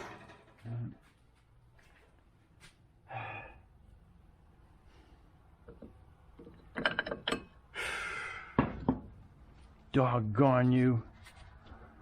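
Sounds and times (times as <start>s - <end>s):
man sighing: 3.1s - 3.6s, 7.8s - 8.6s
tools clicking and knocking: 5.7s - 7.6s.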